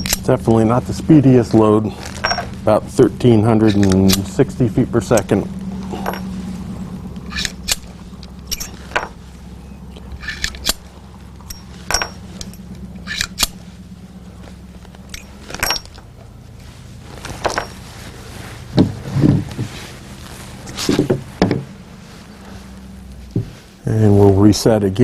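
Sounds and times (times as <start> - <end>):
metallic clinks and clicks: 0.0 - 0.3, 2.1 - 2.6, 7.2 - 9.2, 9.9 - 13.6, 15.0 - 16.1
steady low hum: 0.0 - 25.0.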